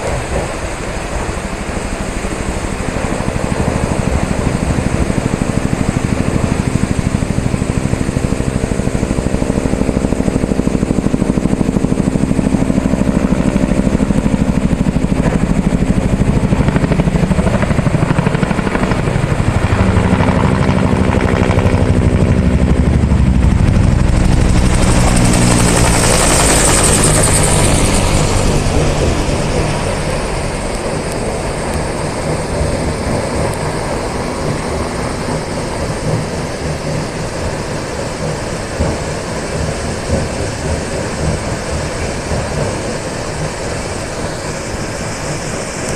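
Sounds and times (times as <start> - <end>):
helicopter rotor chop and engine: 0.0 - 45.9.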